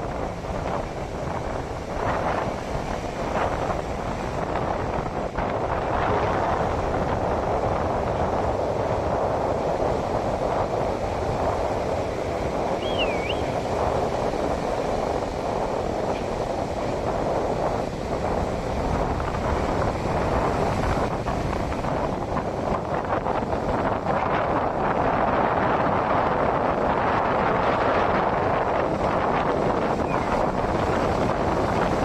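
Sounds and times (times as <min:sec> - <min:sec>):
ocean surf washing in: 0:00.0 - 0:32.0
wind buffeting microphone: 0:00.0 - 0:32.0
wavering high whistle-like call: 0:12.8 - 0:13.5.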